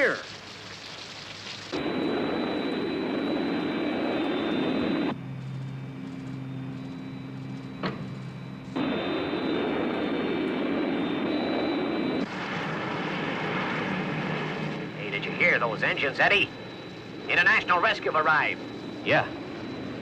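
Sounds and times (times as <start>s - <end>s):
jet engine roar with whine: 0.0s - 20.0s
low steady hum: 0.0s - 20.0s.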